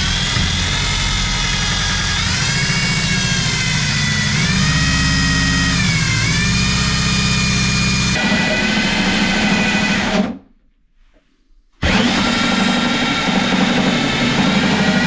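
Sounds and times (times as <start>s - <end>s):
electric power tool motor: 0.0s - 10.3s, 11.8s - 15.0s.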